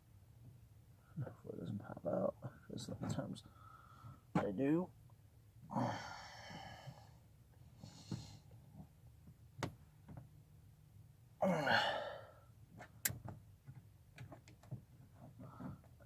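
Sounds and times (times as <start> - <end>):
man breathing heavily and sighing: 3.4 - 4.3, 5.6 - 8.9, 11.4 - 12.6, 15.2 - 16.0
man grunting: 5.7 - 6.4, 11.4 - 12.3.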